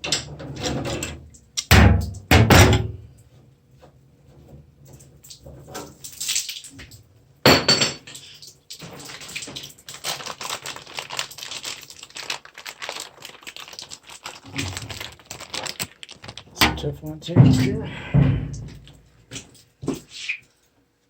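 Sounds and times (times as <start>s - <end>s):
metal fittings knocking: 16.6s - 19.0s.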